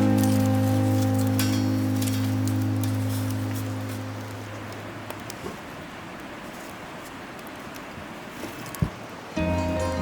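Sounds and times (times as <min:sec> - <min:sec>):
held low music chord: 0:00.0 - 0:05.0, 0:09.4 - 0:10.0
light crackles: 0:00.0 - 0:09.4.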